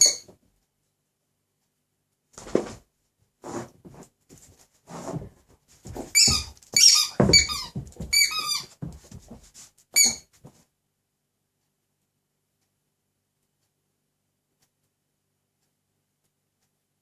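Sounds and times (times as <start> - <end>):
squeaky toy squeaks: 0.0 - 0.3, 6.1 - 8.8, 10.0 - 10.3.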